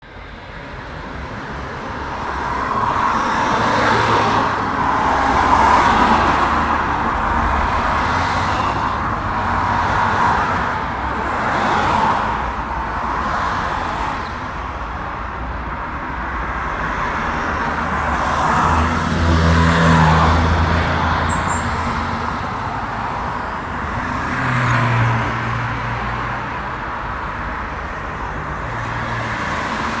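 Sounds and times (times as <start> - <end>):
cars passing by: 0.0 - 30.0.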